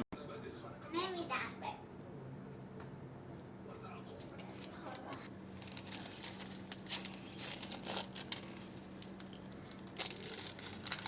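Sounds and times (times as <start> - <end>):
crinkling and rustling: 5.6 - 11.0.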